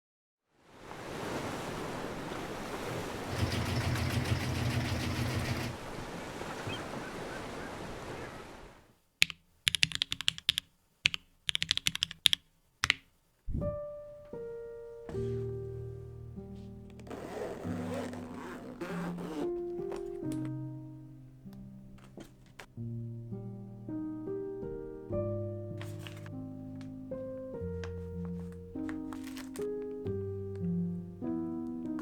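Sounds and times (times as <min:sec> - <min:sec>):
mechanical keyboard typing: 0:09.2 - 0:13.0
music with sustained notes: 0:13.7 - 0:32.0.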